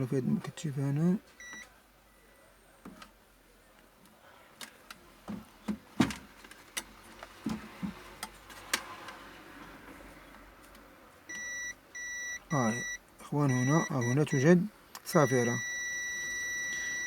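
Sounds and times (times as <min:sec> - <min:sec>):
multimeter continuity beep: 0:01.4 - 0:01.7, 0:11.3 - 0:17.0.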